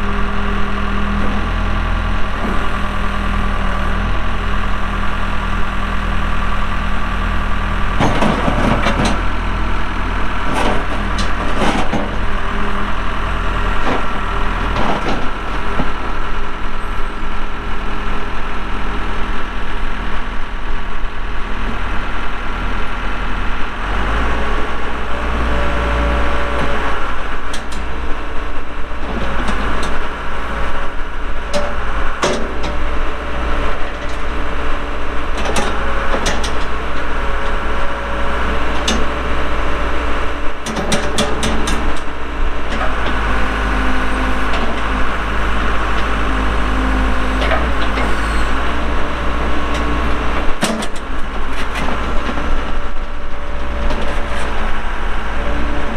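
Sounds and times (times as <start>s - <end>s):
diesel engine running: 0.0s - 55.9s
knocks and clanks of machinery: 7.9s - 9.4s, 10.4s - 12.4s, 13.8s - 16.0s, 31.5s - 33.1s, 35.3s - 37.6s, 38.6s - 39.2s, 40.5s - 53.2s.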